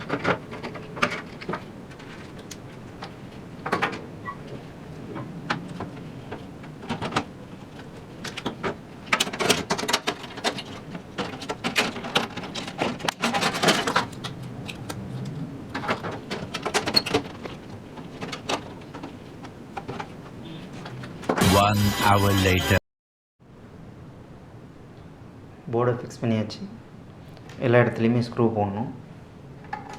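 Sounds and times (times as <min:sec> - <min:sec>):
parts clicking into metal case: 0:05.5 - 0:20.1.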